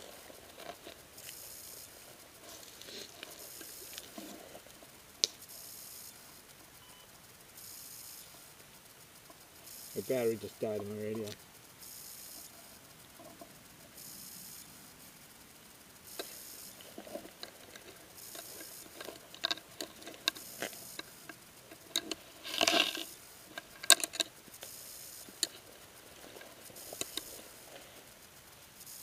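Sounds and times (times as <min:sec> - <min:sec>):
rustling of dry brush: 0:00.0 - 0:06.6, 0:14.6 - 0:29.0.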